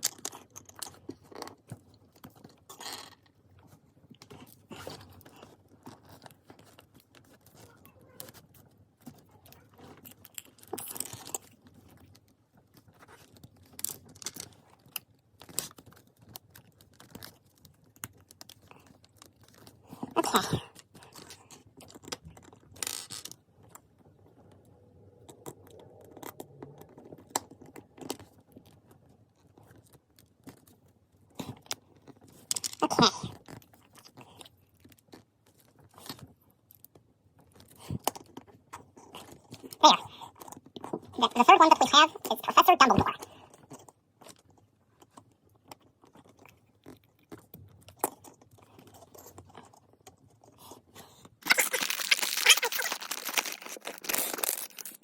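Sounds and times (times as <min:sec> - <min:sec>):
packet rustling: 0:51.4 - 0:55.0.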